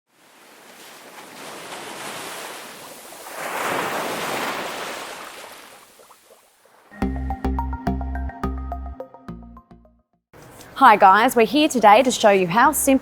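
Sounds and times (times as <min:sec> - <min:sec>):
ocean surf washing in: 0:00.1 - 0:05.8.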